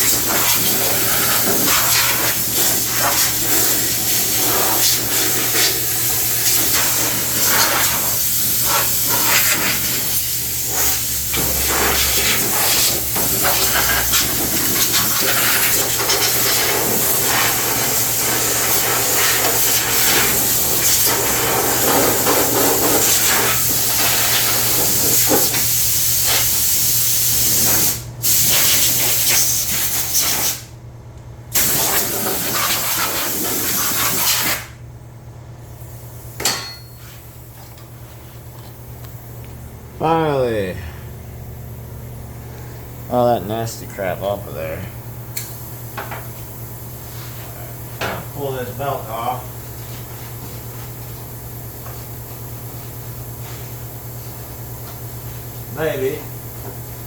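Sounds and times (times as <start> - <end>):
high-pressure spray hiss: 0.0 - 30.6, 31.6 - 34.7.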